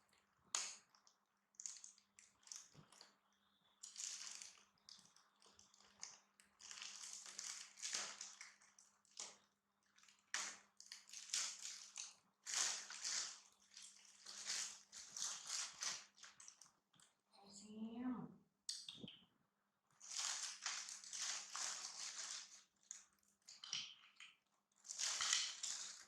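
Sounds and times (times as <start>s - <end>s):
plastic bag crinkling: 3.8s - 9.4s, 10.0s - 16.7s, 20.0s - 23.1s, 24.8s - 26.0s.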